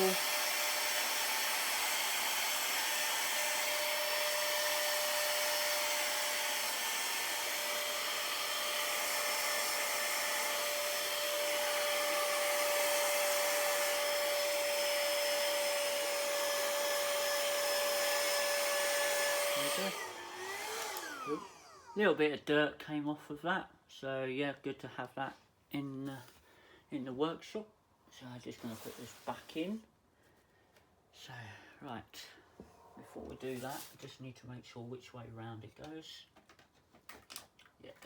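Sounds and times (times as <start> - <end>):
mini blower-vacuum whining: 0.0 - 22.2.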